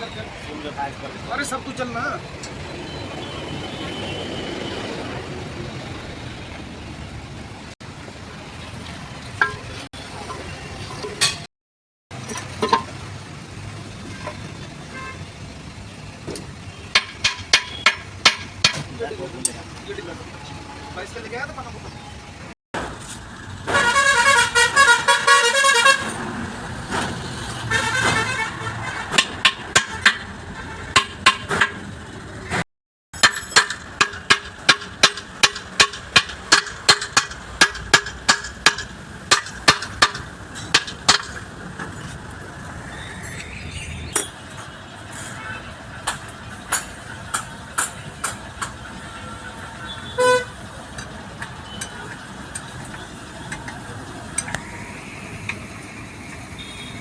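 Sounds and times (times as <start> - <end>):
sharp knocks: 16.9 - 18.9, 33.2 - 41.4
vehicle horn warbling: 23.7 - 26.2, 49.9 - 50.6.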